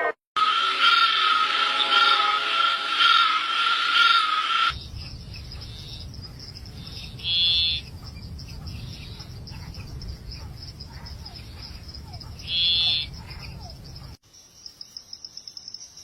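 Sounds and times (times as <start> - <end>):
steady high tone: 0.4 - 4.8
insect trill: 0.4 - 16.0
insects chirping: 0.4 - 16.0
low rumble: 4.7 - 14.2.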